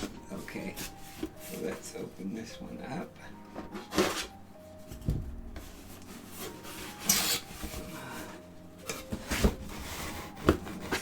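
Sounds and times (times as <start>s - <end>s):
cardboard rubbing and scraping: 9.0s - 11.0s.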